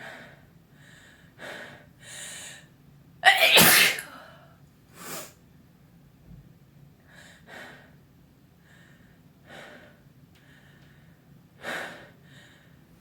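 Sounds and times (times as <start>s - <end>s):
sharp gasping breaths: 8.6s - 12.9s.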